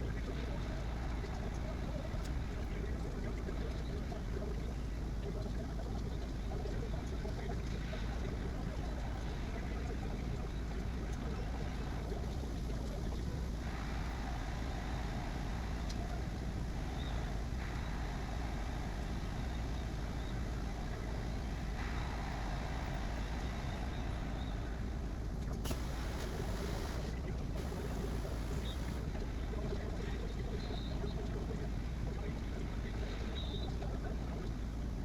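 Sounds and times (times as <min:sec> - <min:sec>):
three d printer humming and whirring: 0:13.4 - 0:29.1.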